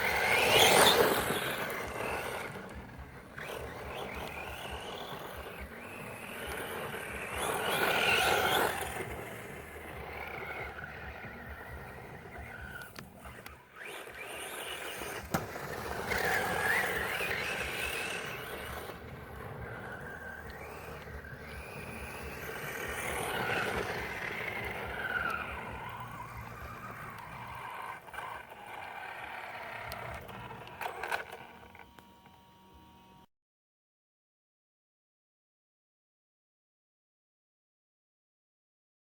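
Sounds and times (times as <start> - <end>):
tyres on dirt: 0.0 - 32.2
electric motor whining: 0.0 - 33.3.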